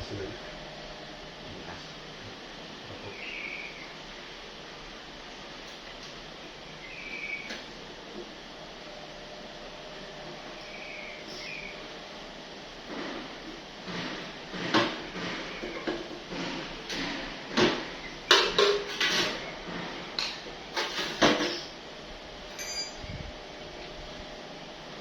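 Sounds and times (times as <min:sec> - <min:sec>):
hard objects knocking and clattering: 0:13.9 - 0:19.4.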